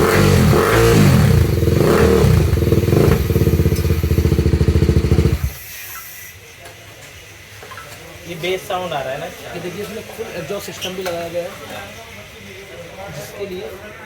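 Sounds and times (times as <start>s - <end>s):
motorcycle engine revving: 0.0s - 5.6s.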